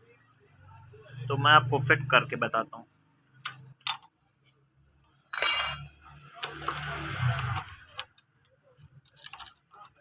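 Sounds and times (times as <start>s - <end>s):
metallic clink: 5.3s - 6.0s.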